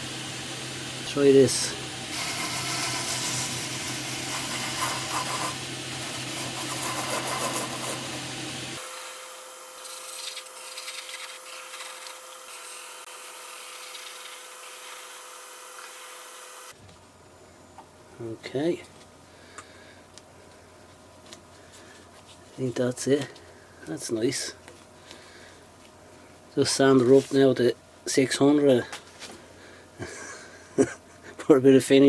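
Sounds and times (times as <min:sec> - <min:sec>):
lathe motor humming: 0:00.0 - 0:16.7
gouge cutting and scraping wood: 0:02.1 - 0:16.2.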